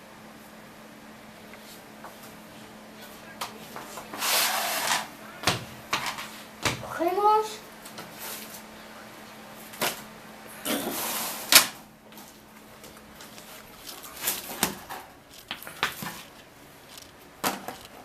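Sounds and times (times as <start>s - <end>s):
rustling scrape: 4.1s - 5.1s, 13.2s - 18.0s
sharp clicks and knocks: 12.8s - 18.0s.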